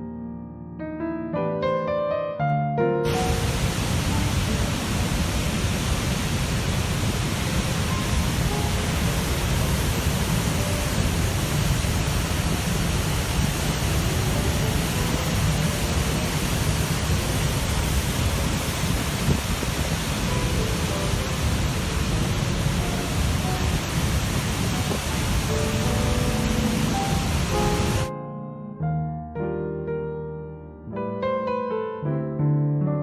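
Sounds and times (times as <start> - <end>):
waterfall roaring: 3.1 - 28.1.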